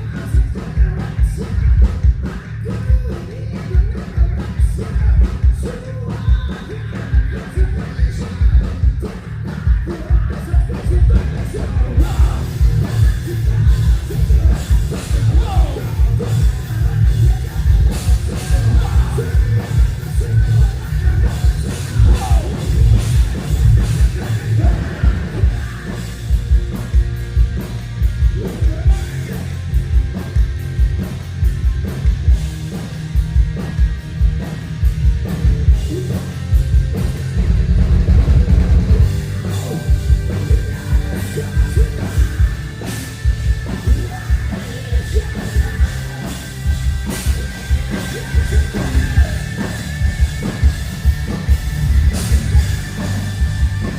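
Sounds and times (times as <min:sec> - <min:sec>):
person singing: 0:00.0 - 0:26.1, 0:38.2 - 0:50.7
drum kit: 0:00.0 - 0:53.9
heavy bass and guitar: 0:00.0 - 0:53.9.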